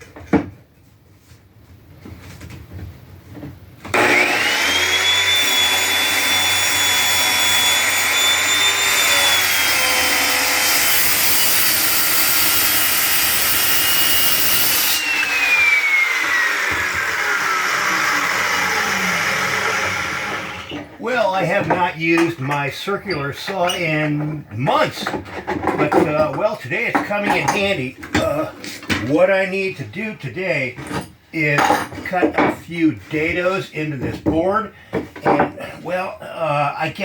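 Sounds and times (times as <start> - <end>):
circular saw cutting wood: 3.9 - 20.9.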